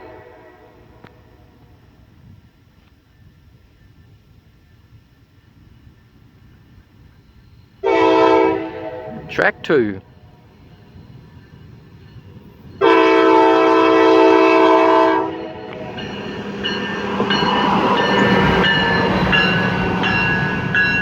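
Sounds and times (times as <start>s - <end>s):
train horn blast: 0.0s - 1.6s, 7.8s - 9.5s, 12.8s - 16.0s
train rumbling on rails: 0.0s - 21.0s
high-pitched ringing tones: 10.0s - 12.9s
rail clicking: 15.5s - 21.0s.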